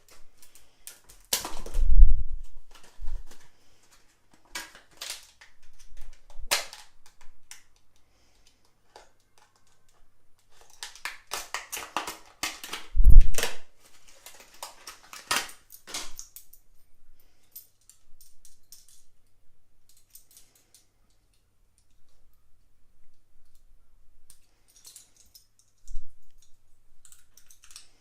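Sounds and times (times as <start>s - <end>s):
plastic packaging crackling: 0.0s - 7.8s, 8.8s - 16.4s.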